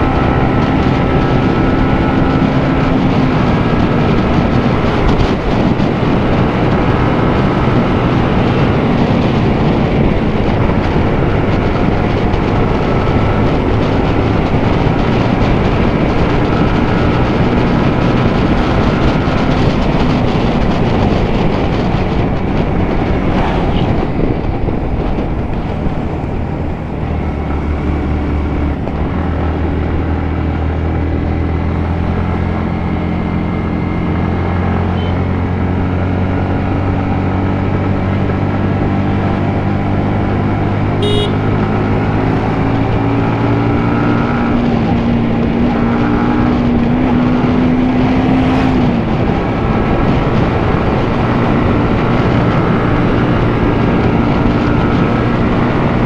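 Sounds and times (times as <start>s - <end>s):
motorcycle engine accelerating: 0.0s - 56.0s
wind rushing: 0.0s - 56.0s.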